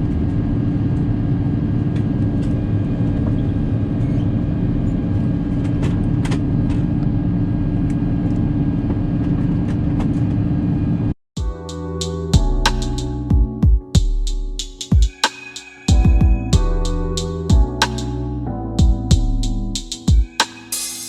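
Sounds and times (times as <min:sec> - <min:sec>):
airliner cabin drone: 0:00.0 - 0:11.1.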